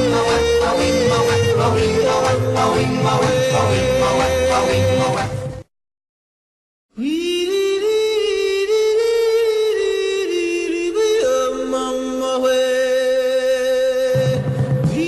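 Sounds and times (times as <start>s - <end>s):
long held vocal notes: 6.9s - 15.0s.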